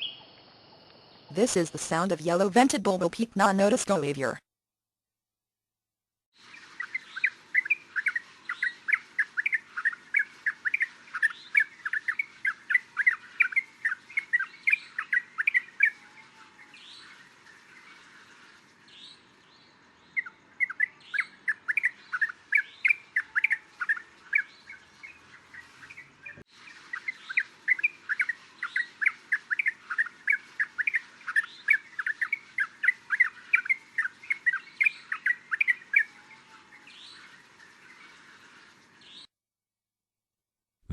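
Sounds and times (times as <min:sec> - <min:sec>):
bird calling in rapid runs: 0:06.6 - 0:16.0, 0:20.2 - 0:36.1.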